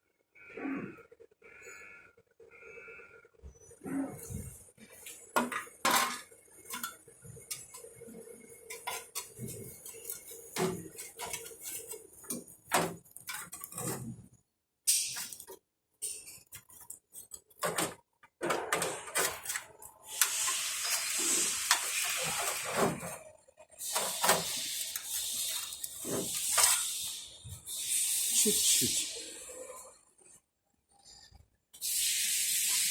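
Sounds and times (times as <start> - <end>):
steady hiss: 20.0 - 23.1, 23.8 - 29.8, 31.8 - 32.9.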